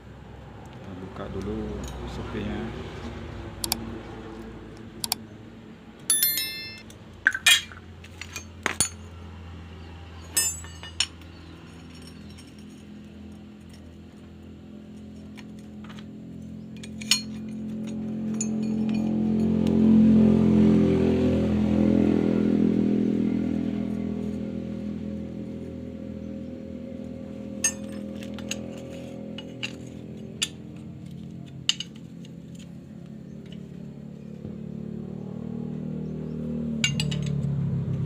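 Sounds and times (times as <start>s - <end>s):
engine hum: 0.0s - 38.0s
metal tools clinking on metal: 1.7s - 2.2s, 6.1s - 9.2s, 10.2s - 14.2s, 16.3s - 19.6s, 27.5s - 32.8s, 36.8s - 37.5s.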